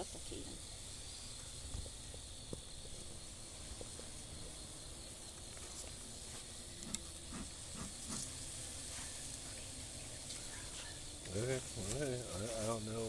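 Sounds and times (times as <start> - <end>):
high-pitched outdoor hiss: 0.0 - 13.0.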